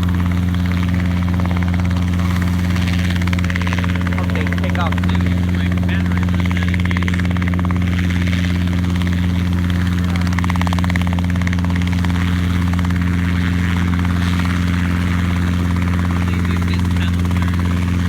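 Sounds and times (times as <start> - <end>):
helicopter rotor and engine drone: 0.0 - 18.0.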